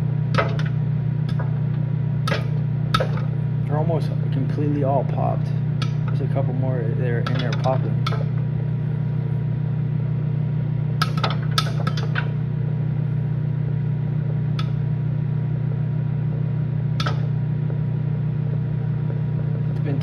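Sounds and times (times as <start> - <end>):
microwave oven humming: 0.0 - 20.0
popcorn kernels popping: 0.3 - 3.6, 5.7 - 6.4, 7.1 - 8.6, 10.9 - 20.0.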